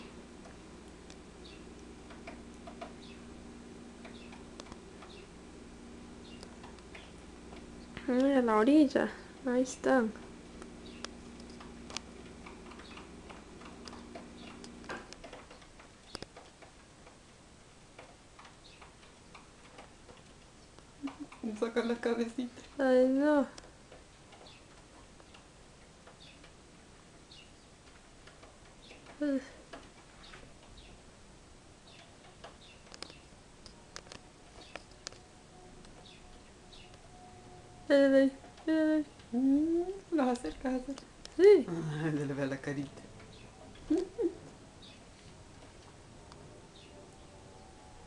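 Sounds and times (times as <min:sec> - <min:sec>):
steady low hum: 0:00.0 - 0:48.0
birds pecking taps: 0:06.2 - 0:08.4, 0:10.6 - 0:16.8, 0:31.9 - 0:33.2
soft high bird chirps: 0:10.8 - 0:11.2, 0:34.5 - 0:37.6
light ticks and taps: 0:31.9 - 0:35.2.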